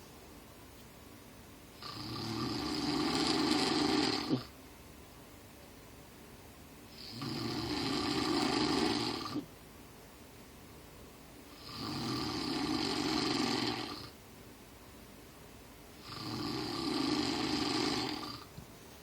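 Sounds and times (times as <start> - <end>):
person snoring loudly: 1.8 - 4.5, 6.9 - 9.5, 11.6 - 14.2, 16.0 - 18.5.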